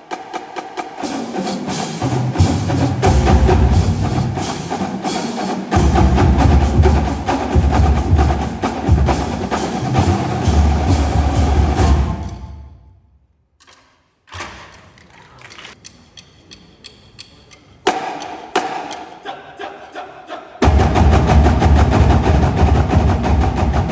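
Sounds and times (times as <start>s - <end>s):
marching drumline playing: 0.0s - 12.8s, 20.6s - 23.9s.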